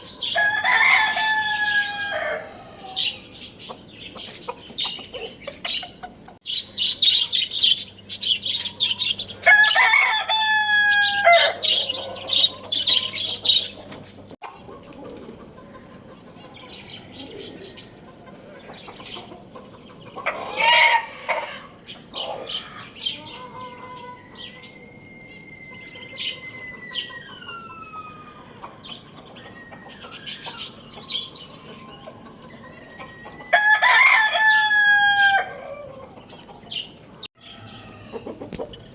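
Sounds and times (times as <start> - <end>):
roosters crowing: 0.0 - 3.6, 8.5 - 14.0, 20.1 - 36.4, 37.4 - 38.6
small birds chirping: 2.6 - 10.2, 11.0 - 14.8, 15.6 - 33.6, 35.9 - 38.4.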